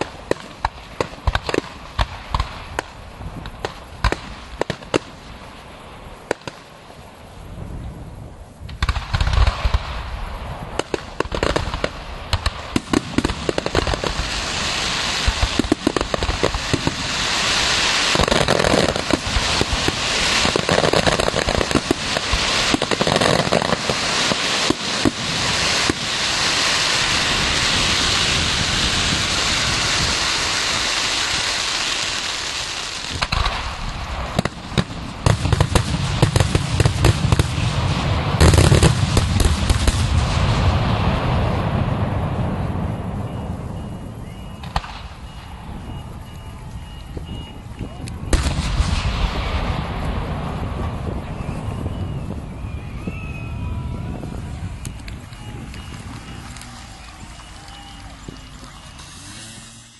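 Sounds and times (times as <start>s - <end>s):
heavy firework bangs: 0.0s - 5.4s, 8.6s - 43.9s, 44.6s - 45.7s, 48.2s - 52.8s
dense firework crackling: 0.0s - 59.9s.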